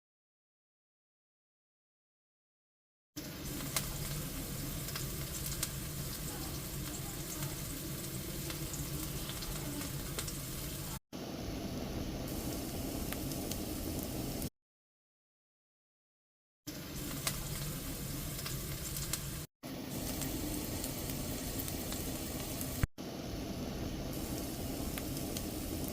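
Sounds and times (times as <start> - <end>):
food sizzling in a pan: 3.2 - 14.5, 16.7 - 25.9.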